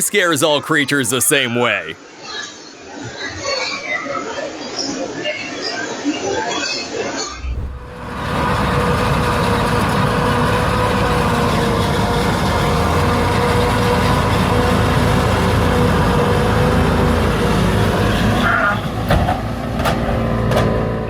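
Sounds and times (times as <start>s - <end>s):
heavy vehicle engine running: 7.6s - 19.6s.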